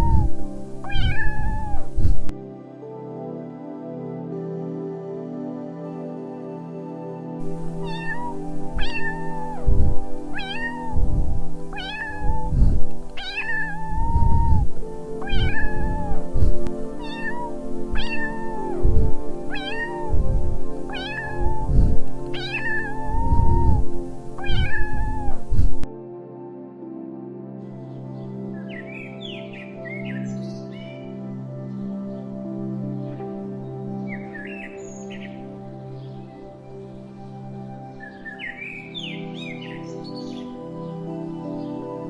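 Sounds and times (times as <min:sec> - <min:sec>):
cat meowing: 0:00.0 - 0:02.2, 0:07.5 - 0:25.8
background music: 0:00.0 - 0:42.0.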